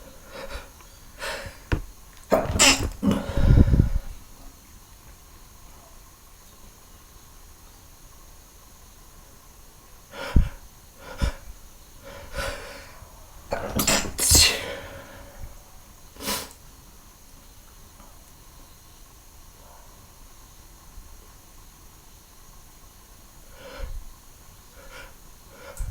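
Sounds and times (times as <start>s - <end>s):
person sneezing: 13.6s - 15.3s.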